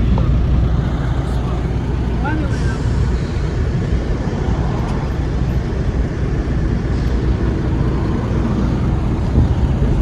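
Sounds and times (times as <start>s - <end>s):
vehicle engines rumbling: 0.0s - 10.0s.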